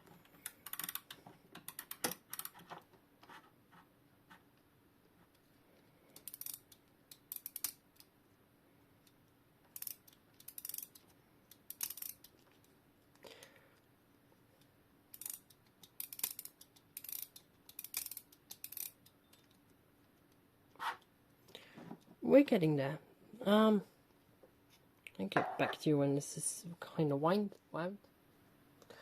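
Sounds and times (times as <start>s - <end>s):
clock winding ratchet clicking: 0.4s - 2.6s, 6.2s - 8.1s, 9.7s - 12.6s, 15.1s - 19.5s.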